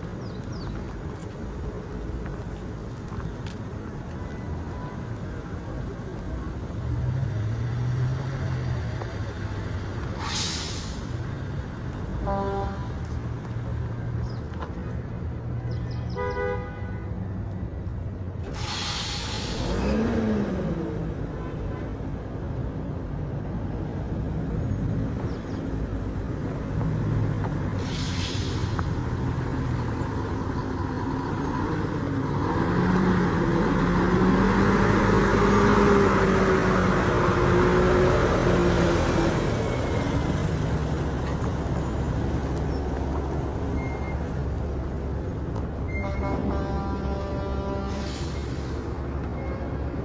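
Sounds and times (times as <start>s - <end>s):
vehicles passing: 0.0s - 50.0s
heavy engine low tone: 12.0s - 13.3s, 27.8s - 50.0s
brief hiss: 18.4s - 19.7s, 27.8s - 28.8s.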